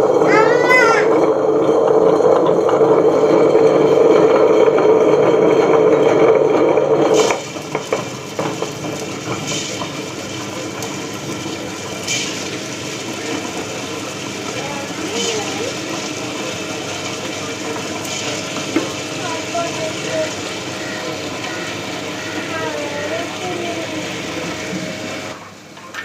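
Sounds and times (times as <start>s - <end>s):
rattling churn with knocks: 0.0s - 20.8s
wet grinder humming: 0.0s - 26.0s.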